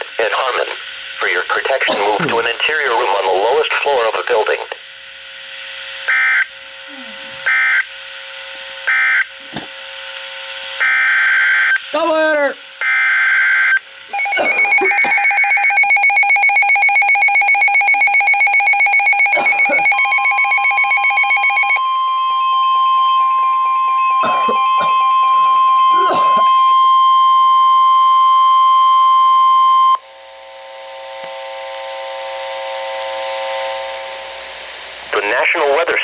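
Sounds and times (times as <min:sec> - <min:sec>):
steady single alarm tone: 0:13.7 - 0:31.1
pulsing multi-tone beep: 0:14.1 - 0:30.0.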